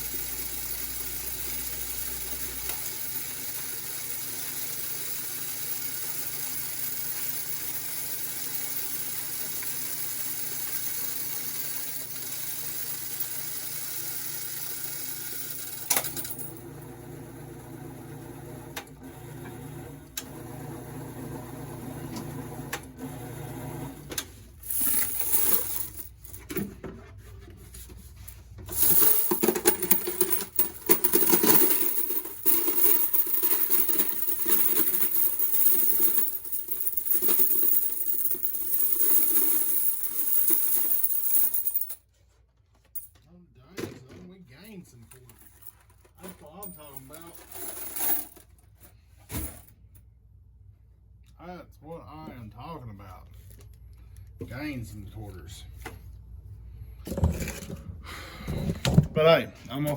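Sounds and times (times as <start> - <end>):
coins clattering: 0.0 - 16.6, 24.6 - 26.6, 28.7 - 42.0, 45.1 - 48.4.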